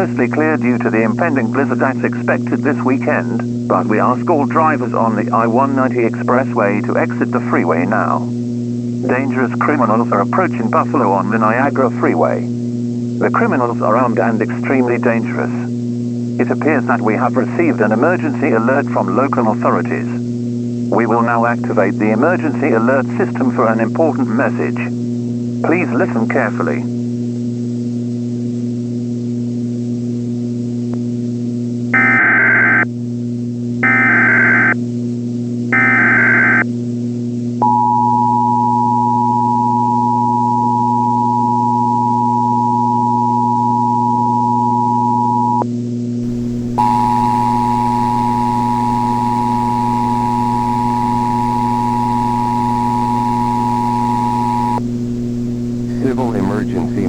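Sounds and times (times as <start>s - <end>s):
digital header tone bursts: 46.2s - 57.0s
steady low hum: 46.2s - 57.0s
two-tone attention signal: 46.2s - 57.0s.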